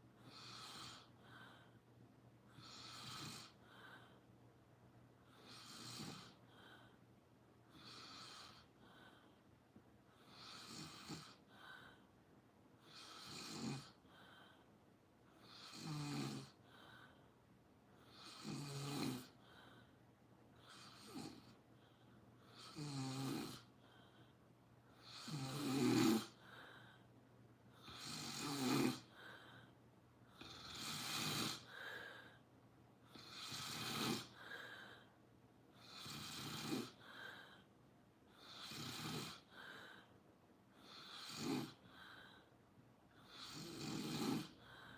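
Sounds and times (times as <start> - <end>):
quiet breaths: 0.0 - 44.9
rattling snores: 0.2 - 1.1, 2.5 - 3.6, 5.4 - 6.4, 7.7 - 8.7, 10.2 - 11.5, 12.8 - 14.0, 15.4 - 16.6, 18.1 - 19.4, 20.6 - 21.6, 22.5 - 23.7, 25.0 - 26.4, 27.8 - 29.1, 30.3 - 31.8, 33.1 - 34.5, 35.8 - 37.0, 38.3 - 39.6, 40.8 - 41.9, 43.2 - 44.6.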